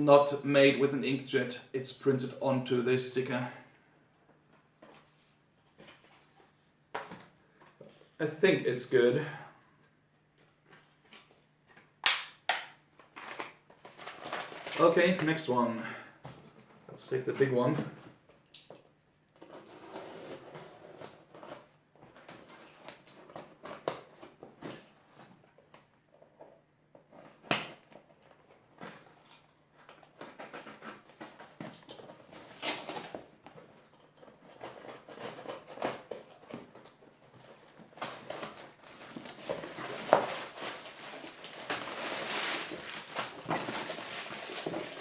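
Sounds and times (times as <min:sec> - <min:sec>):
packaging rustling: 0:13.1 - 0:15.2, 0:28.0 - 0:45.0.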